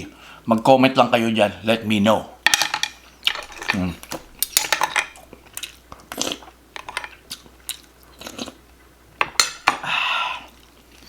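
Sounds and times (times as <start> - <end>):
person chewing with wet clicks: 5.3 - 8.7.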